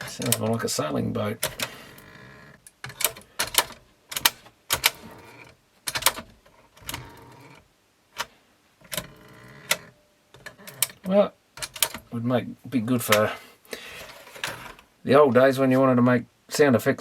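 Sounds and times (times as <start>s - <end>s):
plastic door creaking: 0.0s - 7.6s, 8.2s - 12.1s, 14.0s - 14.9s
plastic door clicks and clacks: 1.4s - 2.1s, 2.8s - 7.6s, 8.2s - 12.1s.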